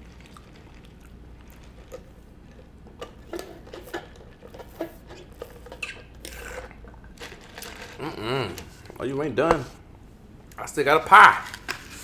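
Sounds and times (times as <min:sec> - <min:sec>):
wet chewing smacks: 0:00.0 - 0:03.1.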